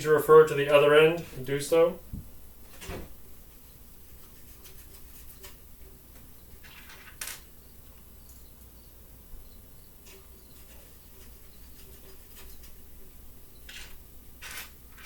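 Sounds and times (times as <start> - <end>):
scraping and rubbing of parts: 4.0 - 5.9, 6.6 - 7.5, 10.0 - 15.0.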